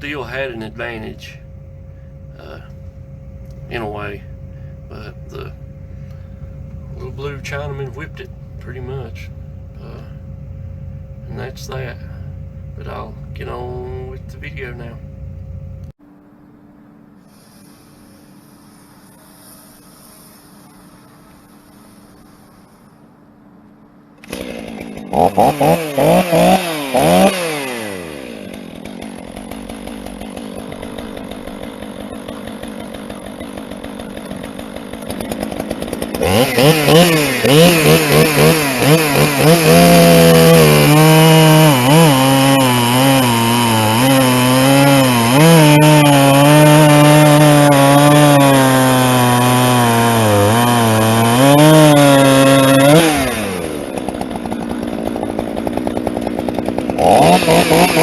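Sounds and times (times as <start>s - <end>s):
chainsaw revving and cutting log: 0.0s - 15.9s, 24.2s - 58.0s.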